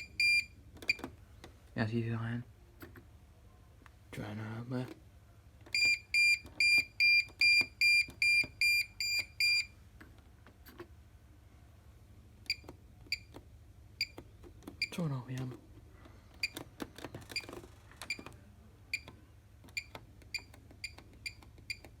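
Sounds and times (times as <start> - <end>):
washing machine high beeps: 0.0 - 1.0, 5.7 - 9.8.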